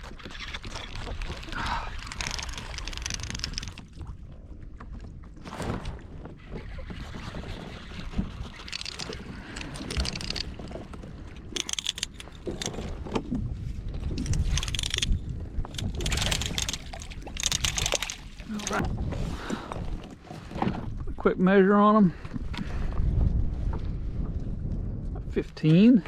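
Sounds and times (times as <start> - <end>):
water slapping against hull: 0.0 - 21.1
wind buffeting microphone: 6.0 - 21.2, 22.2 - 26.0.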